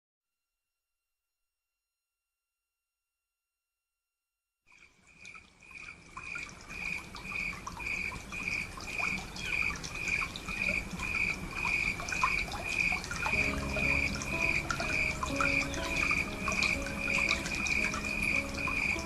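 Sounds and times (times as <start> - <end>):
water trickling and dripping: 4.7 - 19.0.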